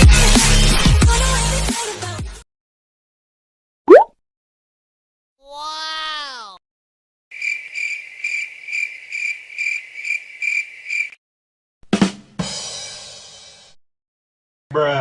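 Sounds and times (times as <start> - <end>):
crickets chirping: 7.3 - 11.2.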